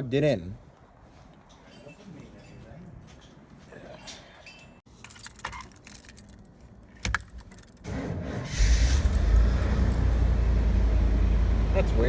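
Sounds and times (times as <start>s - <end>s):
car engine cranking and running: 7.8s - 12.0s.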